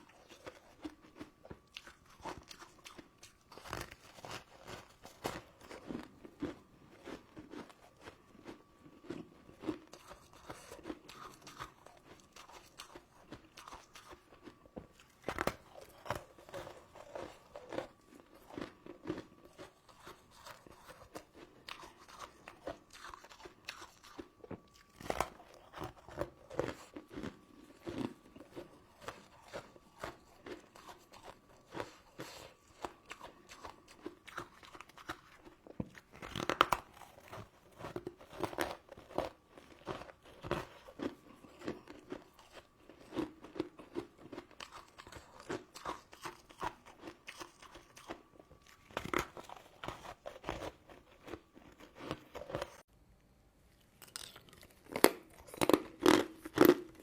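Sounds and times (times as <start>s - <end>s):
chewing crunchy candy: 0.0s - 52.9s, 53.7s - 57.0s.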